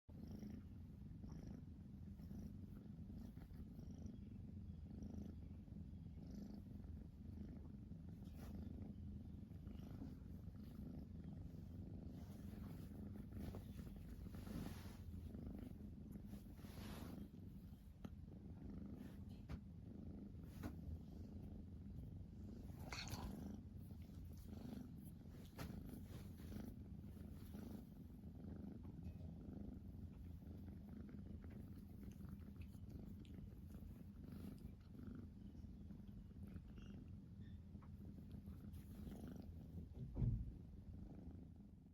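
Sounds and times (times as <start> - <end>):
cat purring: 0.0 - 41.9
faint clicks and rustles: 9.4 - 18.2, 20.3 - 40.6.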